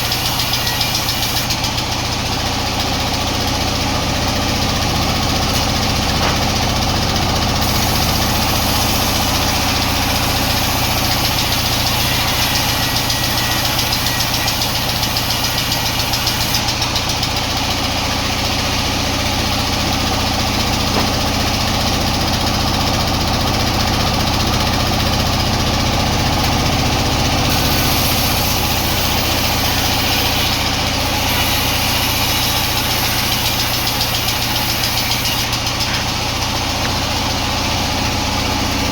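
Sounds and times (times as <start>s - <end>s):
sawmill machinery drone: 0.0s - 38.9s.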